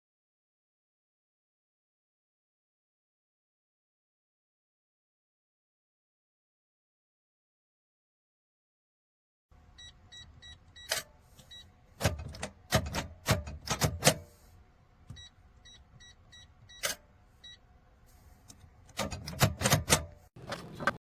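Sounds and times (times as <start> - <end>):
keypad beeping: 9.8 - 14.2, 15.1 - 17.6
metallic clunks of safe lock: 12.0 - 14.3, 18.9 - 20.2.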